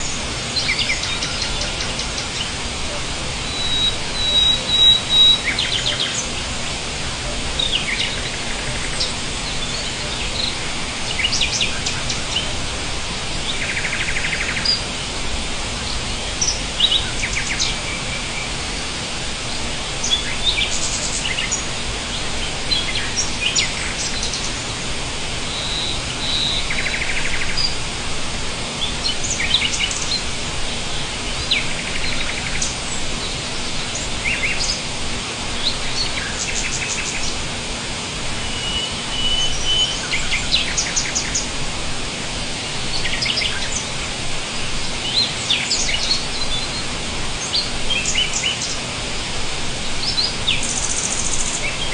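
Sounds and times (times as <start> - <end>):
background hiss: 0.0 - 51.9
songbirds chirping: 0.0 - 51.9
bird trills: 3.4 - 6.3, 38.4 - 41.4.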